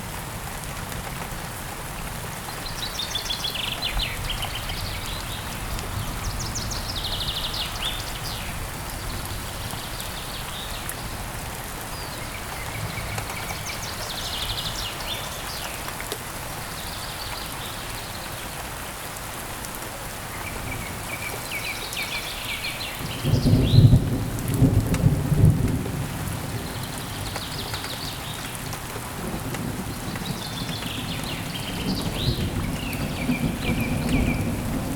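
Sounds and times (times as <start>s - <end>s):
heavy rain: 0.0s - 34.9s
thunder rumbling: 29.2s - 34.9s.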